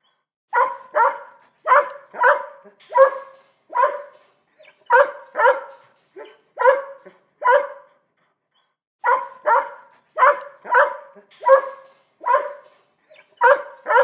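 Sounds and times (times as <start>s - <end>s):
small dog barking: 0.5s - 4.2s, 4.9s - 7.9s, 9.0s - 12.7s, 13.4s - 14.0s.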